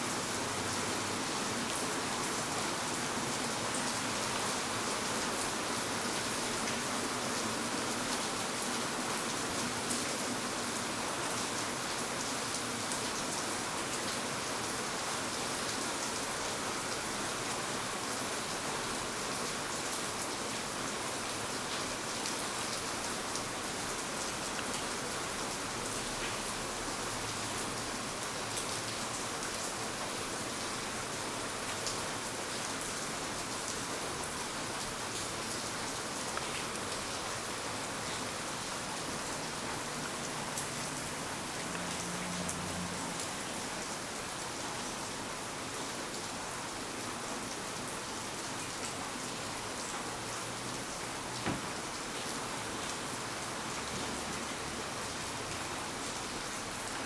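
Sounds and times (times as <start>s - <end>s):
rain drops pattering: 16.9s - 47.1s.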